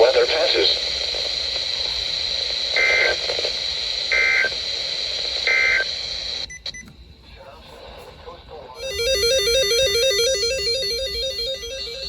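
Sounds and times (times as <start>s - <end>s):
radio hiss: 0.0s - 6.4s
data tone bursts: 8.8s - 12.0s.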